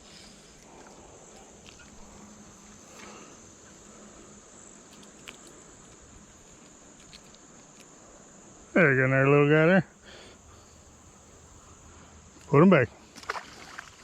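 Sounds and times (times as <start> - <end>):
high-pitched insect chorus: 0.0 - 14.0
faint ticks: 4.8 - 8.0.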